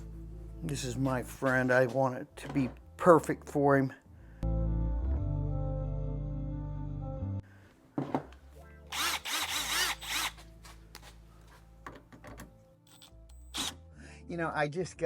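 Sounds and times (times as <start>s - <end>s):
cordless drill running: 8.9s - 10.4s, 13.5s - 13.8s.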